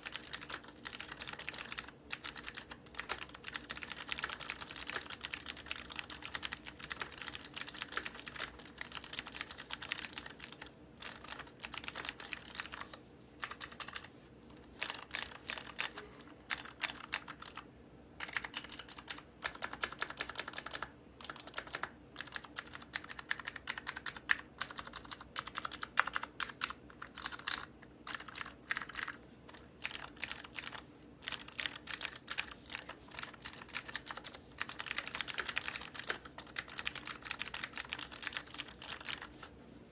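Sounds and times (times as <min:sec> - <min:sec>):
clicky keyboard typing: 0:00.0 - 0:14.1, 0:14.8 - 0:17.6, 0:18.2 - 0:39.3.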